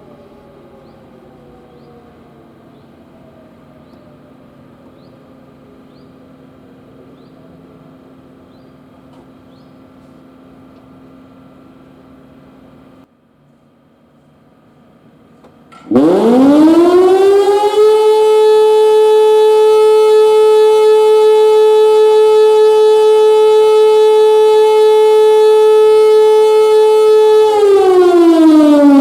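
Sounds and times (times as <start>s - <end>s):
siren winding down: 15.9s - 29.0s.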